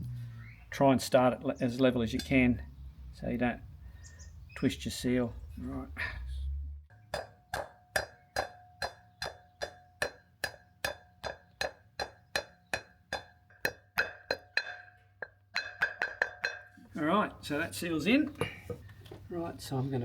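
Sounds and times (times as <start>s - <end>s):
metallic tapping: 1.8s - 2.4s, 6.9s - 16.9s.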